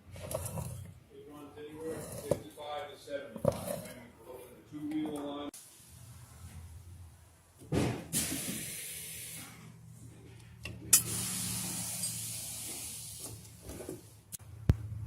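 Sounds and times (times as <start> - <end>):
spraying hiss: 10.9 - 13.4.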